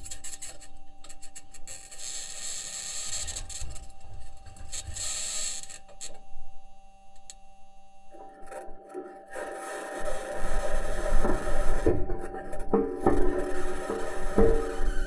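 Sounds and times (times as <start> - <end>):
faint steady tone: 0.0 - 9.7
metal wheels scraping over rock: 9.3 - 15.0.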